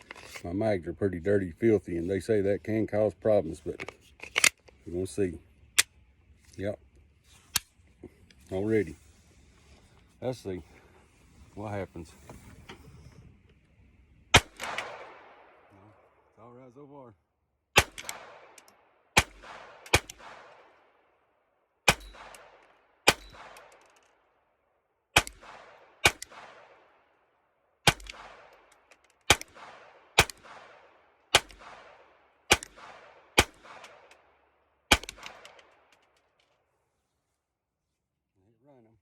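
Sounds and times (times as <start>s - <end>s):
pistol shots with echo: 14.3s - 15.7s, 17.7s - 21.0s, 21.8s - 23.9s, 25.2s - 27.0s, 27.8s - 34.3s, 34.9s - 35.9s.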